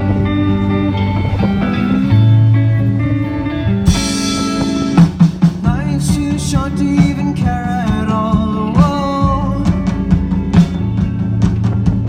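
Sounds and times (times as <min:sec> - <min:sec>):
electric guitar: 0:00.0 - 0:12.0
drum beat: 0:03.9 - 0:12.0
person singing: 0:05.6 - 0:10.1.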